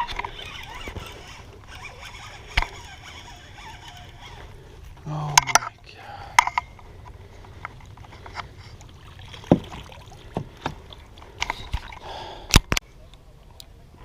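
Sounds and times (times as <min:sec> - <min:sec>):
knocks and clicks on a kayak: 0:05.3 - 0:06.7, 0:09.5 - 0:10.8
water sloshing: 0:06.5 - 0:12.2.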